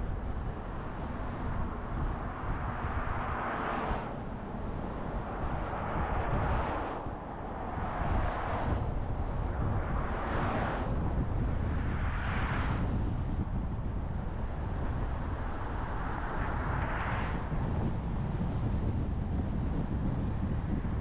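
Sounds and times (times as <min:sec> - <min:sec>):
steady low traffic rumble: 0:00.0 - 0:21.0
vehicles going by: 0:00.0 - 0:21.0.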